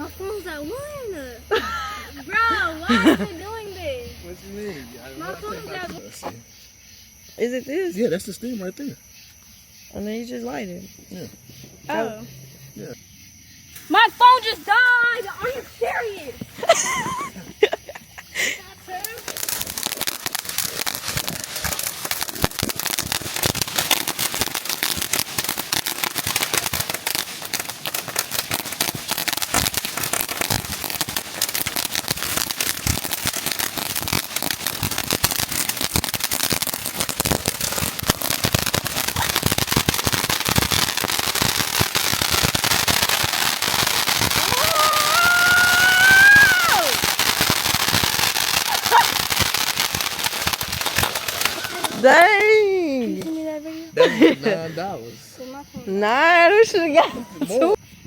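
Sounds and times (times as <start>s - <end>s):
firework crackling and popping: 0.0s - 6.5s, 13.7s - 53.5s
pitched wail: 44.3s - 47.1s, 48.6s - 49.3s.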